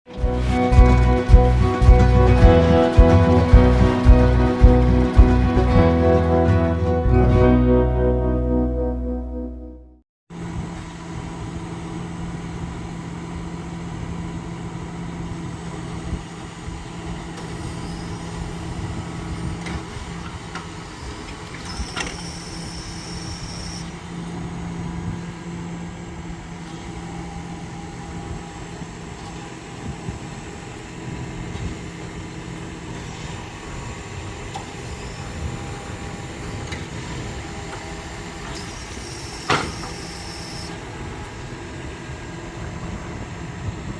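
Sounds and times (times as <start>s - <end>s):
tractor engine running: 0.1s - 7.5s.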